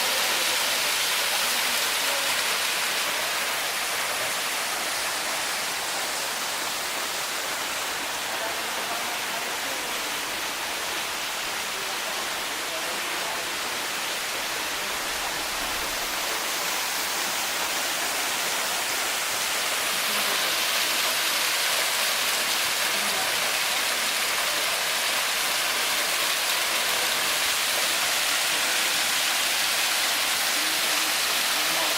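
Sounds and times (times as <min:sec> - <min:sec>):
waterfall rushing: 0:00.0 - 0:31.9.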